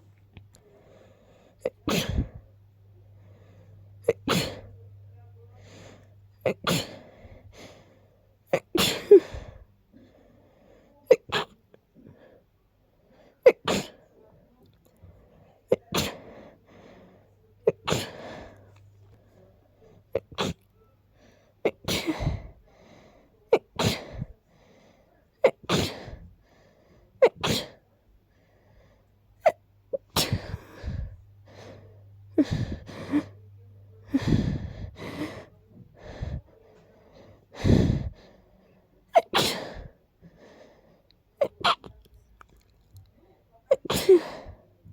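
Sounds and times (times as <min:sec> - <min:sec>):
person sneezing: 0:01.6 - 0:02.4, 0:04.0 - 0:04.7, 0:06.4 - 0:07.1, 0:08.5 - 0:09.6, 0:11.1 - 0:11.6, 0:13.4 - 0:14.0, 0:15.7 - 0:16.3, 0:17.6 - 0:18.5, 0:20.1 - 0:20.7, 0:21.6 - 0:22.5, 0:23.5 - 0:24.3, 0:25.4 - 0:26.3, 0:27.2 - 0:27.8, 0:29.4 - 0:31.2, 0:32.4 - 0:33.4, 0:39.1 - 0:40.0, 0:41.4 - 0:42.0, 0:43.7 - 0:44.6.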